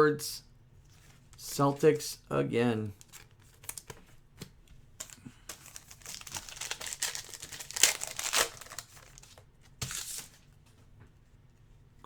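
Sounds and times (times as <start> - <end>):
card pack wrapper crinkling: 5.0 - 10.4.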